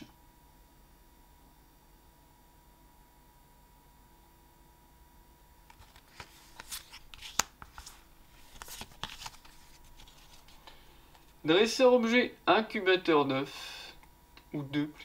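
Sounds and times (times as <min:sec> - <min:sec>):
cards rustling and flicking: 0:05.7 - 0:11.4
card sharp snap: 0:06.2 - 0:07.9.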